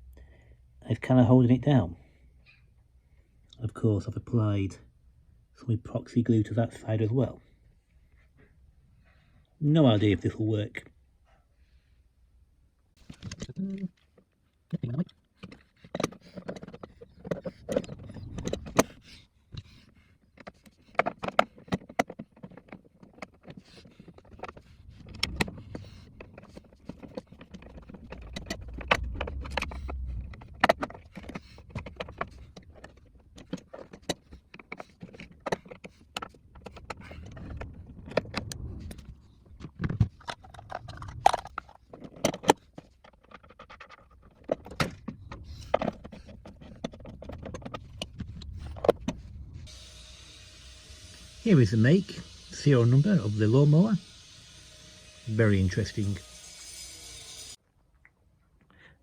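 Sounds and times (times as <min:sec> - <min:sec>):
tools clicking and knocking: 0:15.0 - 0:38.5, 0:39.6 - 0:49.8
low rumbling handling noise: 0:15.6 - 0:49.8.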